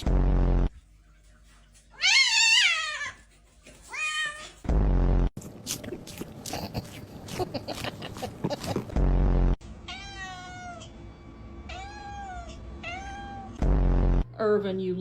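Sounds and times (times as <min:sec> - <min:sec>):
loud low hum: 0:00.0 - 0:00.7, 0:08.9 - 0:09.8, 0:13.5 - 0:15.0
cat meowing: 0:09.8 - 0:10.9, 0:11.7 - 0:13.6.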